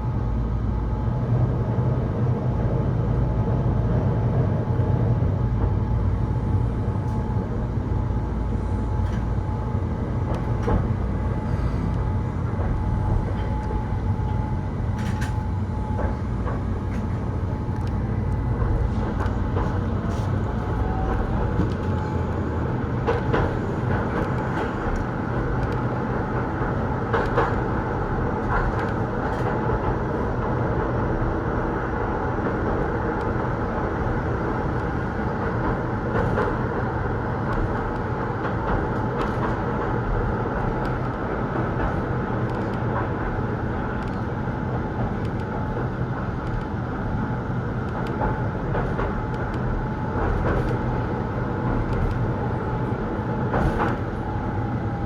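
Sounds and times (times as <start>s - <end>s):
train wheels and motors rumbling: 0.0s - 55.0s.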